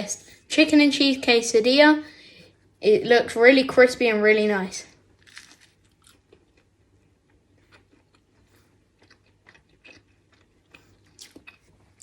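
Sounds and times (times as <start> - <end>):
person chewing crispy food: 5.2 - 12.0.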